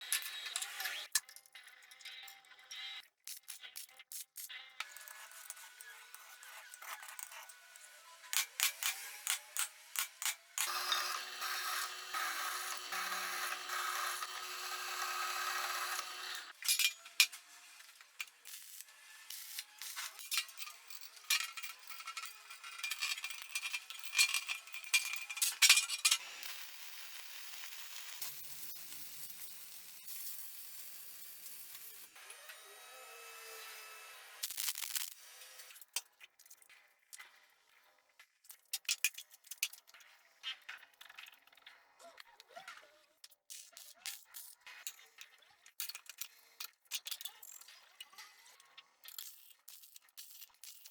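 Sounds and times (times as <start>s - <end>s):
small tool running: 4.8s - 35.8s.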